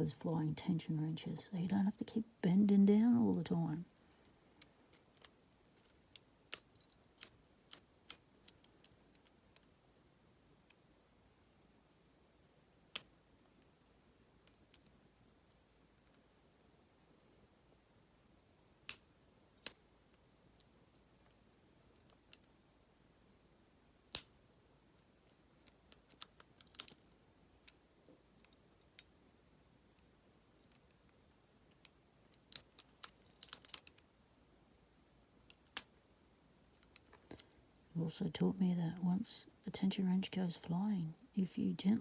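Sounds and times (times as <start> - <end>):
lock picks clicking in padlock: 4.9 - 9.3, 25.6 - 27.0, 31.7 - 34.0.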